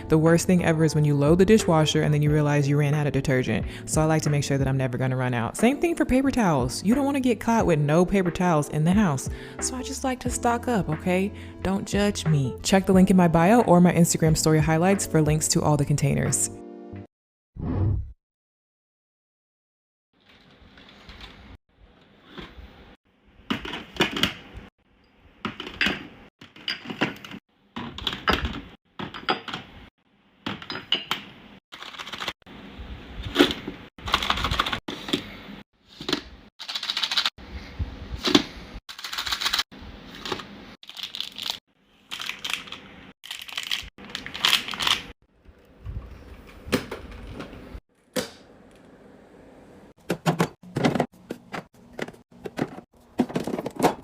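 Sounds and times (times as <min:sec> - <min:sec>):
bottles and cans clinking: 0:30.5 - 0:31.3.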